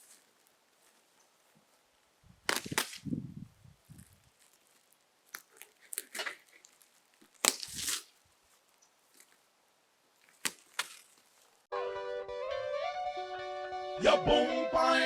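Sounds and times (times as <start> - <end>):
tent cover crinkling and rustling: 0.0 - 9.5, 10.1 - 11.7.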